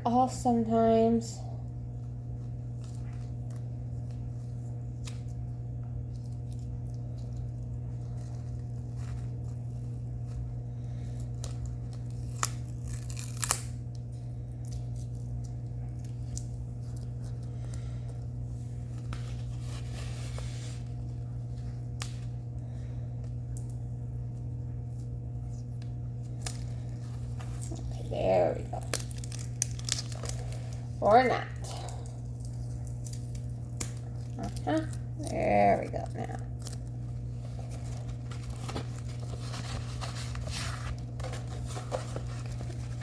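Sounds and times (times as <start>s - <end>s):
steady electrical hum: 0.0s - 43.0s
tape peeling and tearing: 11.3s - 14.0s, 28.7s - 30.7s.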